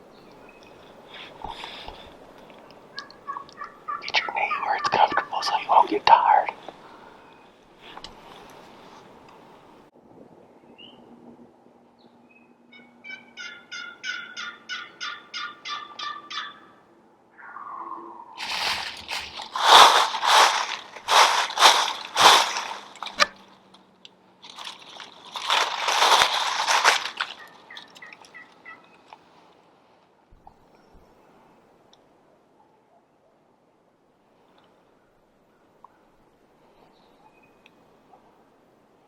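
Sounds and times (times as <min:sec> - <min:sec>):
turkey yelps: 0:02.9 - 0:05.9, 0:12.7 - 0:16.8, 0:17.4 - 0:18.4, 0:27.2 - 0:29.0
turkey gobbling: 0:02.9 - 0:07.0, 0:12.7 - 0:16.8, 0:17.4 - 0:23.4, 0:25.4 - 0:29.0.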